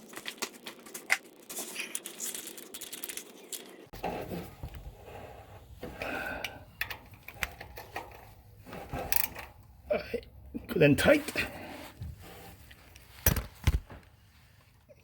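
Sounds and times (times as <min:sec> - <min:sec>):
hand tools on metal parts: 0:03.3 - 0:13.0.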